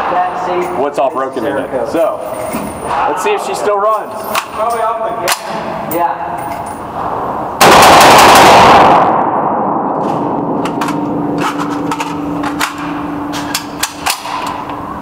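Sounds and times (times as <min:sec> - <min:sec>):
rifle firing rapid burst: 0:07.6 - 0:09.2
gunshot ringing echo: 0:07.6 - 0:14.5.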